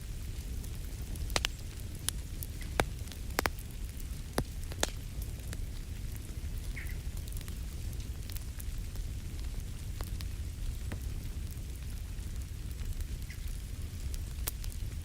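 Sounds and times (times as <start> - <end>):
low fire rumble: 0.0 - 15.0
wood fire crackling: 0.0 - 15.0.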